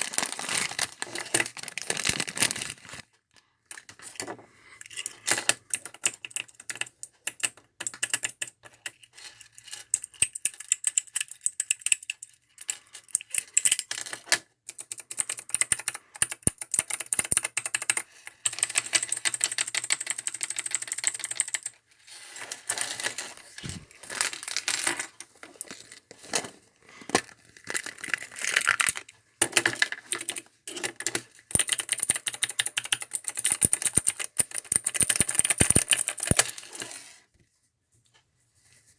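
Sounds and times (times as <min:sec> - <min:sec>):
plastic clicker toys clicking: 0:04.8 - 0:21.8, 0:27.1 - 0:37.0.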